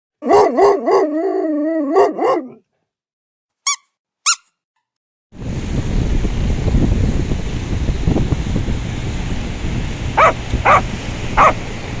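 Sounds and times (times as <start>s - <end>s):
dog whining howl: 0.2s - 2.6s, 10.2s - 10.8s
wind: 0.2s - 2.6s, 5.4s - 12.0s
dog squeaks: 3.7s - 4.5s, 10.2s - 10.8s
surf: 5.4s - 12.0s.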